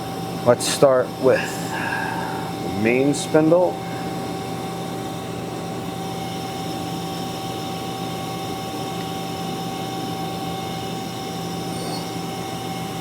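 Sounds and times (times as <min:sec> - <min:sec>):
constant high whine: 0:00.0 - 0:13.0
machine hum: 0:00.0 - 0:13.0.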